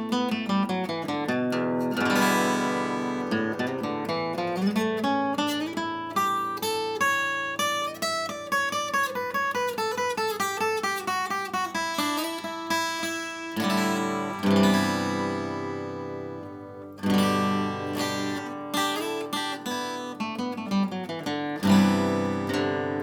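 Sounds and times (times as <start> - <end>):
acoustic guitar picked notes: 0.0 - 23.0
acoustic guitar strummed chords: 0.0 - 23.0.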